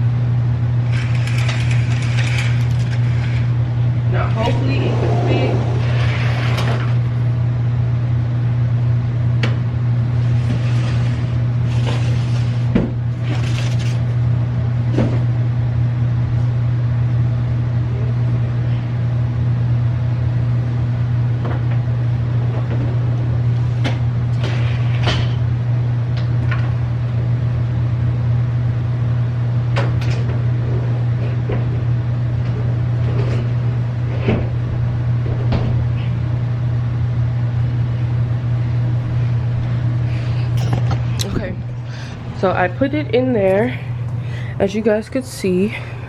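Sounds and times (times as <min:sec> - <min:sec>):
loud deep hum: 0:03.1 - 0:11.8, 0:26.9 - 0:46.0.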